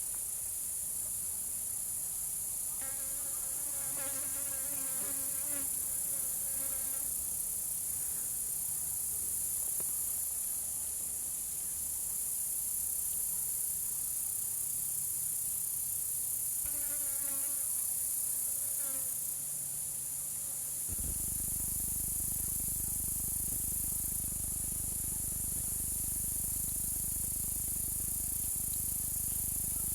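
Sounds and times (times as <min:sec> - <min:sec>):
high-pitched insect chorus: 0:11.9 - 0:29.9.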